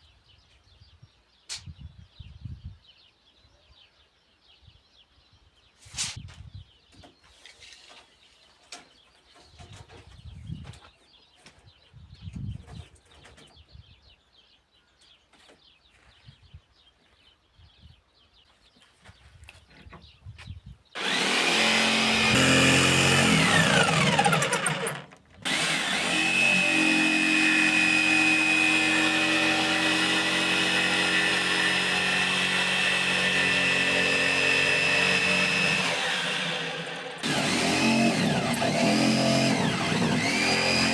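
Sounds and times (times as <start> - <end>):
power tool running: 21.0 - 40.9.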